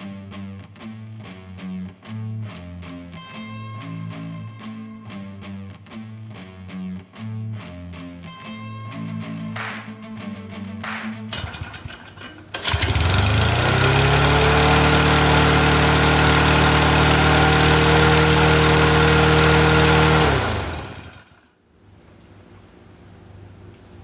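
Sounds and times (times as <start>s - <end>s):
lawn mower engine running: 10.8s - 21.4s
short rattle: 11.4s - 14.4s.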